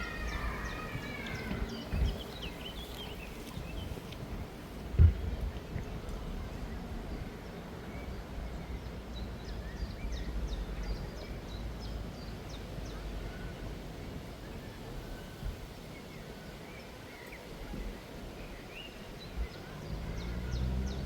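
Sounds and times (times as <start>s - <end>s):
wind rumble on microphone: 0.0s - 21.0s.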